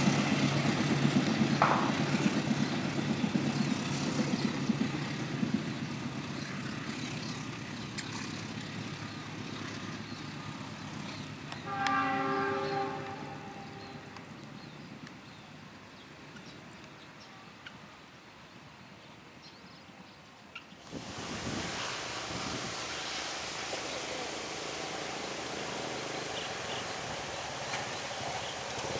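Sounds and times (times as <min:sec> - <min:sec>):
passing train rumble: 0:00.0 - 0:19.4, 0:20.8 - 0:28.9
train horn: 0:11.4 - 0:14.8, 0:25.2 - 0:28.9.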